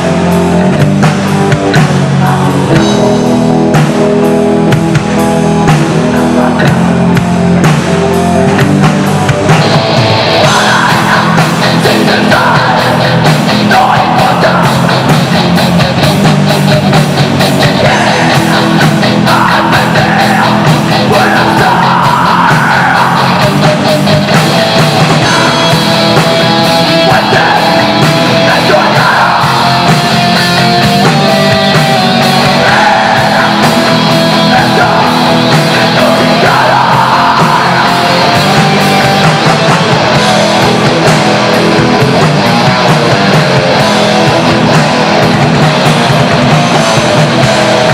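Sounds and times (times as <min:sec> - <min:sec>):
heavy metal band playing live: 0:00.0 - 0:47.9
shouted vocals: 0:10.2 - 0:16.1, 0:17.5 - 0:40.2.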